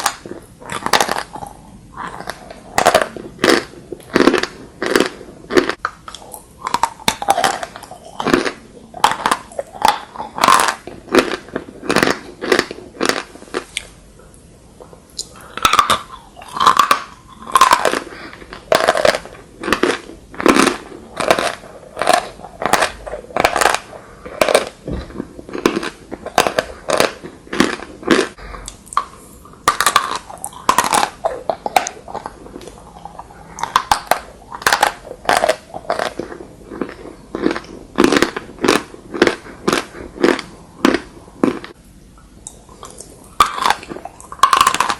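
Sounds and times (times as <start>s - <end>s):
chewing chalk crunches: 15.2s - 41.8s.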